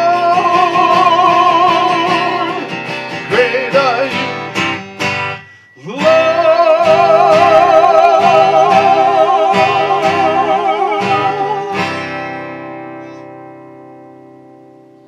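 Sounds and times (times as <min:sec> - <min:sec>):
person singing with vibrato: 0:00.0 - 0:13.2
acoustic guitar strumming: 0:00.0 - 0:15.0.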